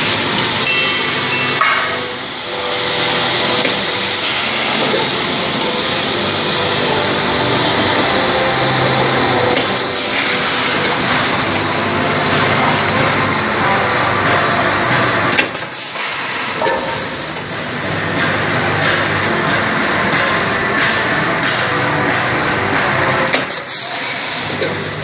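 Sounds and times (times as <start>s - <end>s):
packing machine din: 0.0s - 21.7s
thin high whine: 0.6s - 15.3s.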